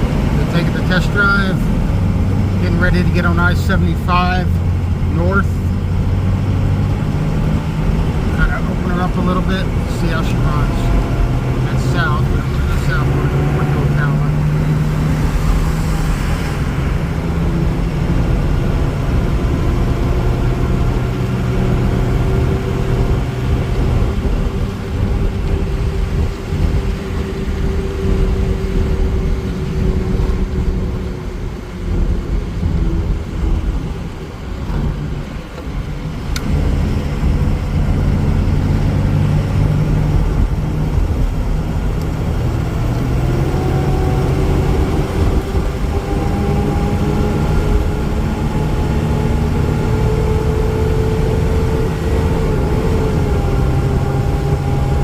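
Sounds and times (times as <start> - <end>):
diesel engine running: 0.0 - 55.0
road noise: 0.0 - 55.0.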